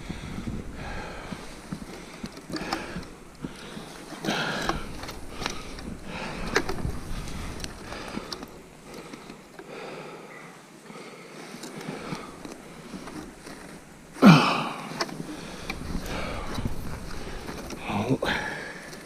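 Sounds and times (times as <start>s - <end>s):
trap clicking and rustling: 0.5s - 9.7s, 11.4s - 14.2s, 14.8s - 19.0s.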